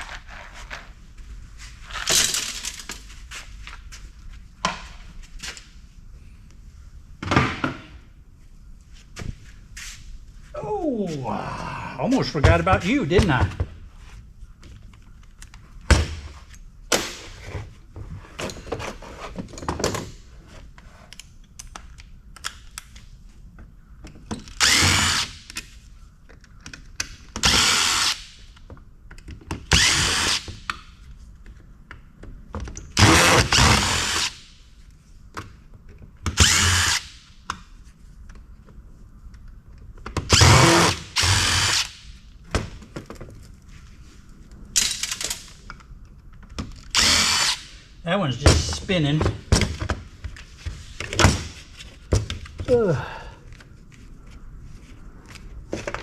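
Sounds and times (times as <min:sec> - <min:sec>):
cordless drill bursts: 0:24.6 - 0:25.3, 0:29.7 - 0:30.4, 0:33.0 - 0:34.4, 0:36.4 - 0:37.0, 0:40.3 - 0:41.9, 0:47.0 - 0:47.6.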